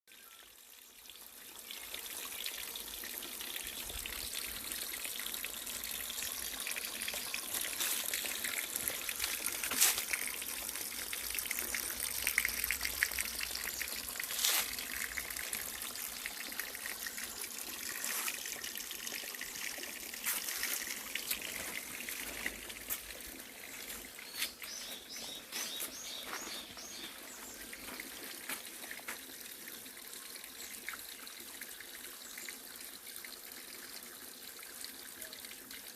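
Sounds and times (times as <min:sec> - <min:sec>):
stream trickling over rocks: 0:00.1 - 0:35.9
bird chirping: 0:24.2 - 0:28.3.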